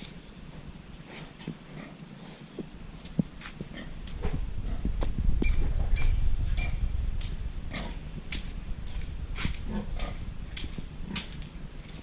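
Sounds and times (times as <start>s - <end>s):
high-pitched pig squeaks: 5.4s - 6.8s.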